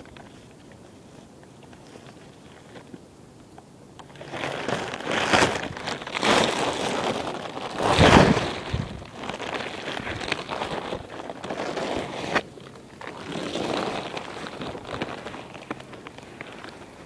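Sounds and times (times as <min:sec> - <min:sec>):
wind buffeting microphone: 0:07.8 - 0:09.3.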